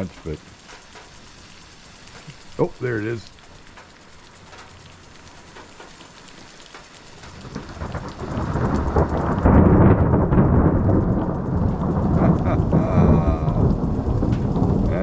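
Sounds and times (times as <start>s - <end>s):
raindrop patter: 0.0s - 15.0s
thunder rumbling: 7.2s - 15.0s.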